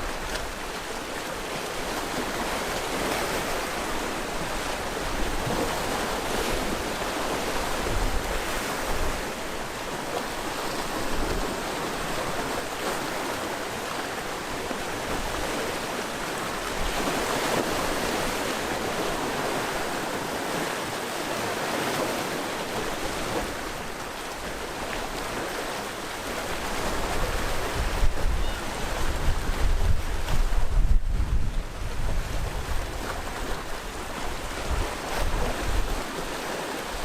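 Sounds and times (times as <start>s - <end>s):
sea waves on shore: 0.0s - 37.0s
wind buffeting microphone: 26.6s - 36.2s.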